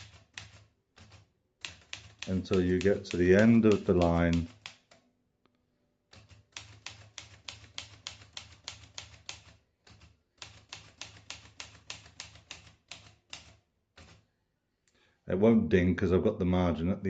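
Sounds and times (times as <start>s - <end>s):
manual typewriter typing: 0.0s - 5.0s, 6.1s - 14.2s.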